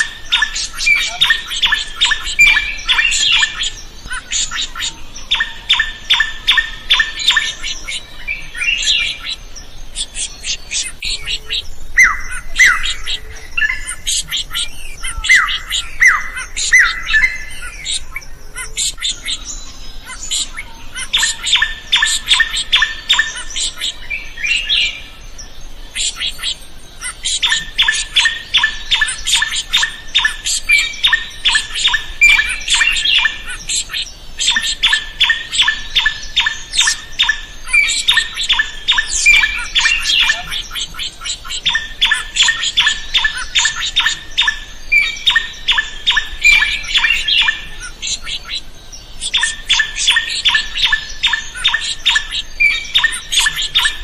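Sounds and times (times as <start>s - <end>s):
bird calling harsh repeated notes: 25.9s - 54.0s.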